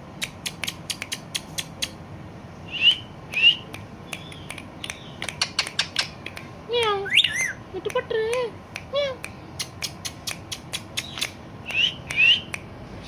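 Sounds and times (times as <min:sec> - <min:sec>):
parrot sharp clicks: 0:00.2 - 0:02.0, 0:03.3 - 0:06.5, 0:09.6 - 0:12.7
parrot rising whistles: 0:02.7 - 0:03.6, 0:07.1 - 0:07.6, 0:11.7 - 0:12.5.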